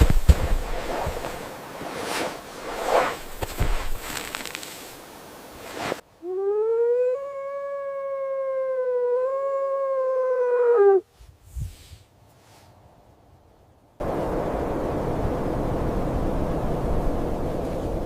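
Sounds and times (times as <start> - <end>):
wolf howling: 6.3 - 11.0.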